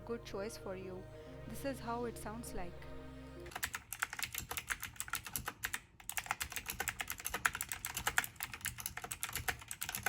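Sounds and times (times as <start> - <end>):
clicky keyboard typing: 3.4 - 10.0.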